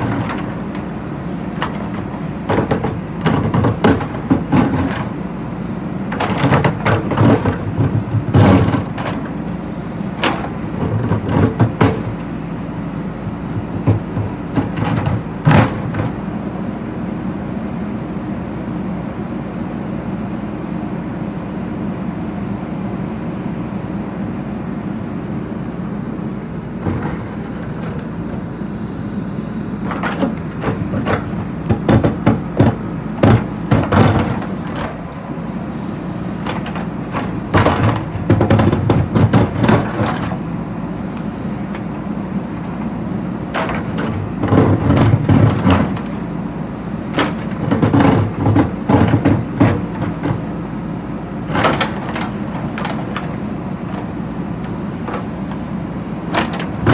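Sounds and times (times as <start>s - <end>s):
bucket clanking on brick and stone: 0.0s - 16.2s, 29.8s - 56.9s
diesel engine running: 0.0s - 19.9s, 23.6s - 56.9s.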